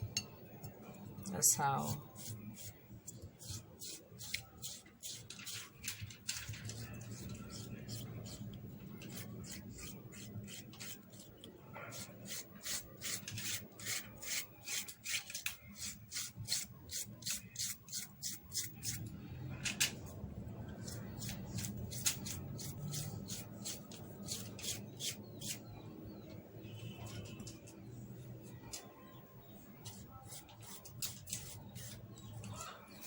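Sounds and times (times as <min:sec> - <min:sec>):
scraping gel from aloe leaf: 0:01.8 - 0:19.0.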